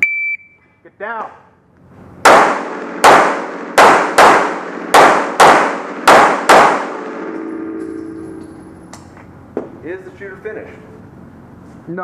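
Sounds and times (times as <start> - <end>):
pistol shots with ringing echo: 2.2 - 8.4.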